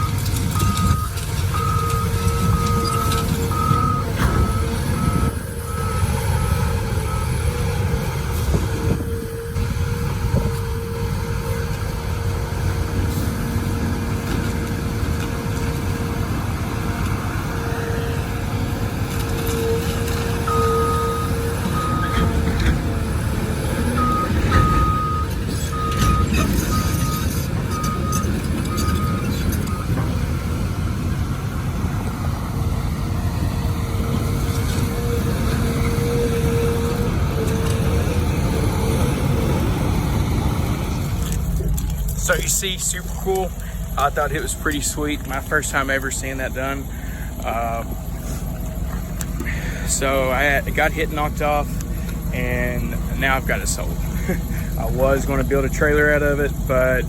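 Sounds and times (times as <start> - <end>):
backup alarm beep: 0.0 - 7.4, 20.5 - 23.0, 23.9 - 30.0
excavator engine rumble: 0.0 - 57.0
hydraulic whine: 0.0 - 57.0.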